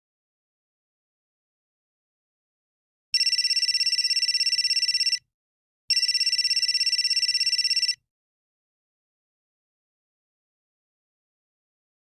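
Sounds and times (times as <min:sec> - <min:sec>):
electronic phone ringtone: 0:03.2 - 0:05.2, 0:05.9 - 0:08.0.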